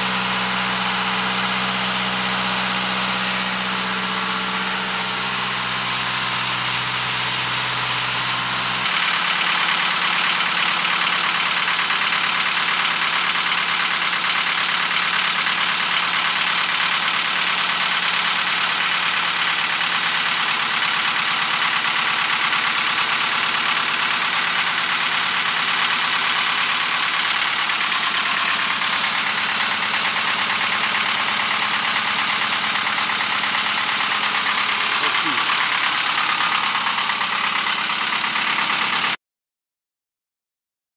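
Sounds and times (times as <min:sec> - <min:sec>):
diesel generator running: 0:00.0 - 0:39.2.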